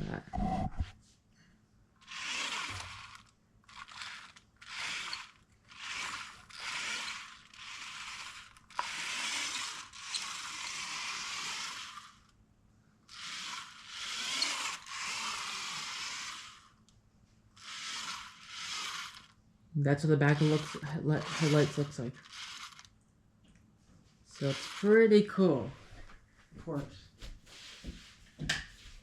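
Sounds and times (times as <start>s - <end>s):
toy car motor whirring: 2.0s - 12.4s, 13.0s - 16.9s, 17.5s - 19.4s, 20.0s - 22.9s, 24.3s - 25.5s.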